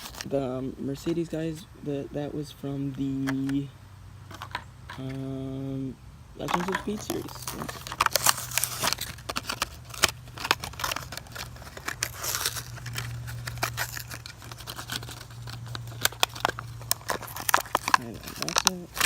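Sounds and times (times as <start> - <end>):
cardboard ripping: 0.0 - 0.3, 6.4 - 19.0
plastic crinkling and snapping: 0.0 - 0.3, 6.4 - 19.0.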